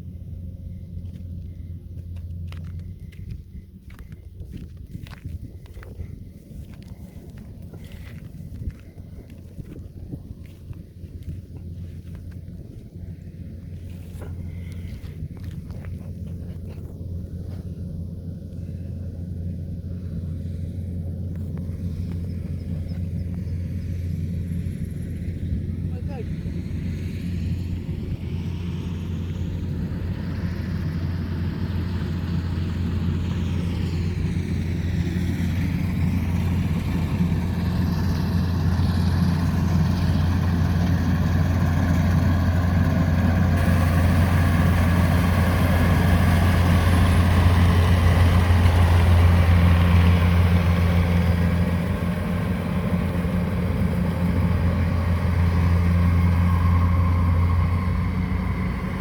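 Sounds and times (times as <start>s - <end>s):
harvester engine drone: 0.0s - 59.0s.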